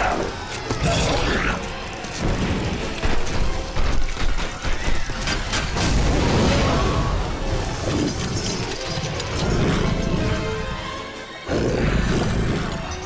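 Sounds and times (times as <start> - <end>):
orchestral score: 0.0 - 13.0
crashes and booms: 2.2 - 8.6.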